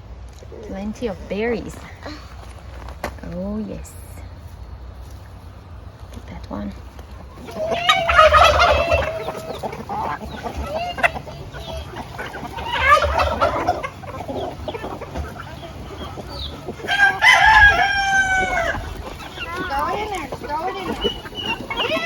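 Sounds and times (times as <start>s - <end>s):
rooster crowing: 16.9s - 18.9s.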